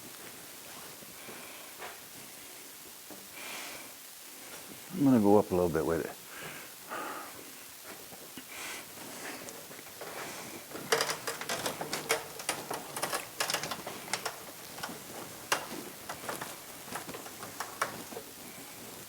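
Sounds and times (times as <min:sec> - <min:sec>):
winch ratchet clicking: 0:10.9 - 0:18.1.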